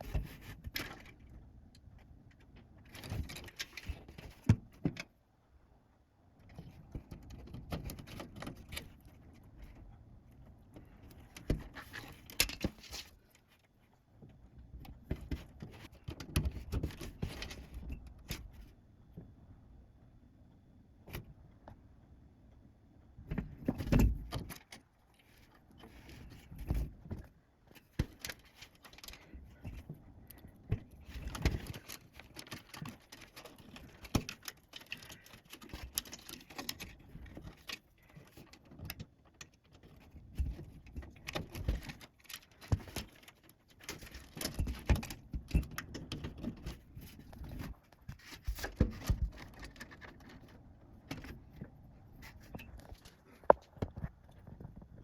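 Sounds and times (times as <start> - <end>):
clicks and knocks of computer parts: 2.4 - 5.2, 6.4 - 9.1, 10.8 - 13.4, 14.8 - 18.7, 23.2 - 55.0.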